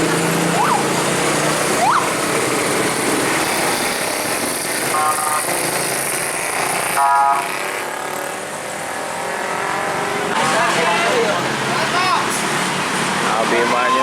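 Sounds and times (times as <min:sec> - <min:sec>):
traffic noise: 0:00.0 - 0:14.0
bus air horn blasts: 0:04.8 - 0:05.7, 0:06.8 - 0:07.7.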